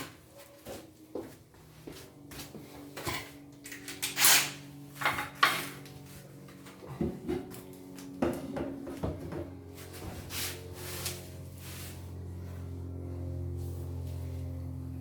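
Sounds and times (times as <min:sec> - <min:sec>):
furniture parts knocking and clattering: 0:08.2 - 0:09.6.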